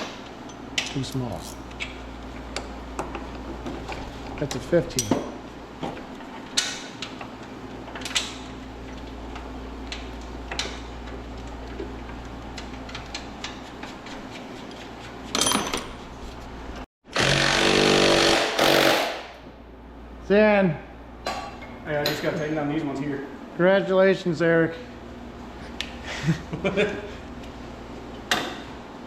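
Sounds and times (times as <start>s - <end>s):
loud mechanical buzz: 17.1s - 19.4s.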